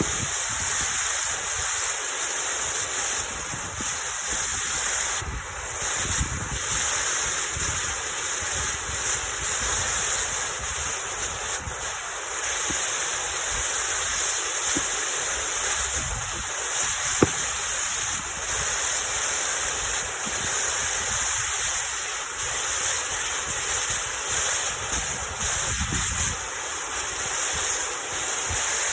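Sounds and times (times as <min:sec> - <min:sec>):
wind buffeting microphone: 0:24.9 - 0:26.4.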